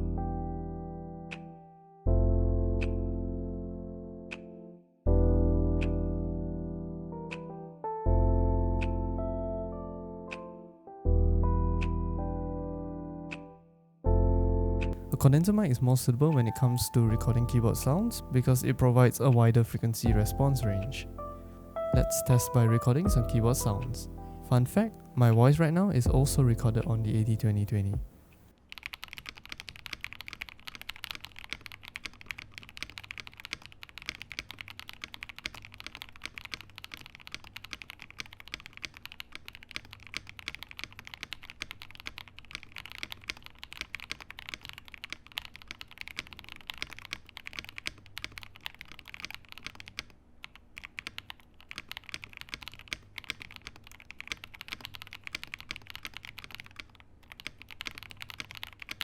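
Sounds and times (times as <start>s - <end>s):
typing on computer keyboard: 28.7s - 59.0s.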